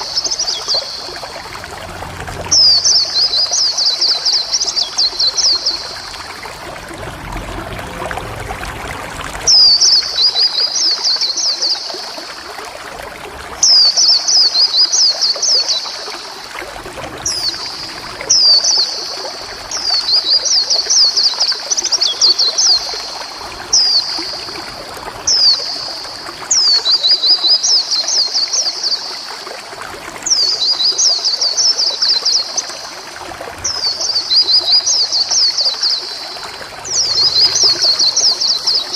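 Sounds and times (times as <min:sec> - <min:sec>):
bird chirping song: 0:00.0 - 0:06.4, 0:33.7 - 0:38.9
trickling water hiss: 0:00.0 - 0:38.9.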